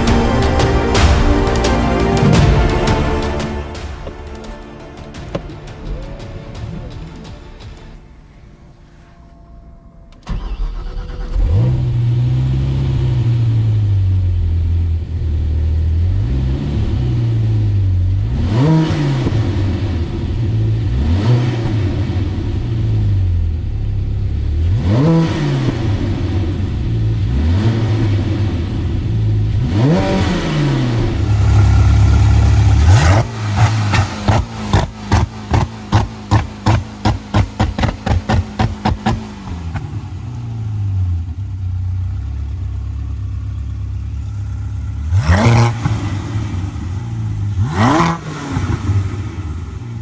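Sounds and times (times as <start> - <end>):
engine revving: 0.0 - 6.0, 10.2 - 50.0
car engine starting and idling: 0.0 - 50.0
engine exhaust pops: 31.2 - 49.9.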